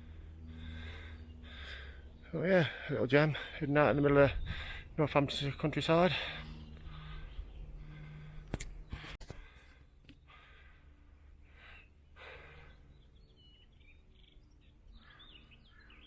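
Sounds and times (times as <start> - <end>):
faint bird chirps: 11.5 - 16.0.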